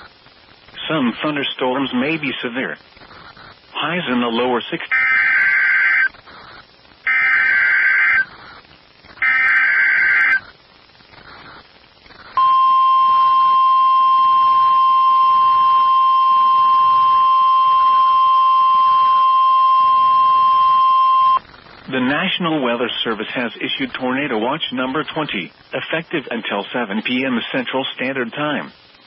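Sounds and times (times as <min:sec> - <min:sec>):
buzzy digital data bursts: 0:00.0 - 0:29.0
steady warning alarm tone: 0:07.1 - 0:08.3, 0:09.2 - 0:10.4, 0:12.4 - 0:21.4.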